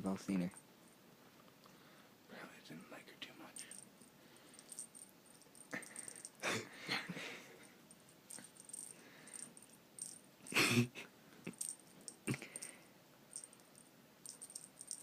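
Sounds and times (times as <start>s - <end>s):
small hard objects rattling: 8.3s - 10.2s, 13.4s - 15.0s.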